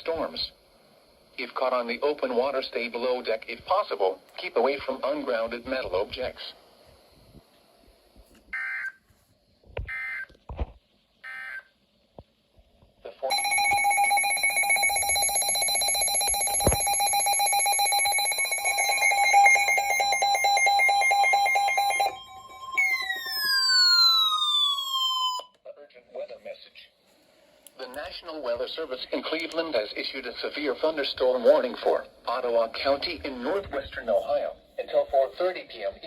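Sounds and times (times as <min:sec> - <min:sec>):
steady warning tone: 0:13.3 - 0:25.5
two-tone alarm signal: 0:13.3 - 0:25.5.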